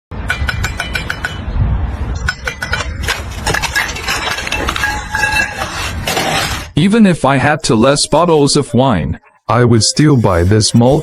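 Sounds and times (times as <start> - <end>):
metallic clinks and taps: 0.3 - 1.4, 2.2 - 5.5.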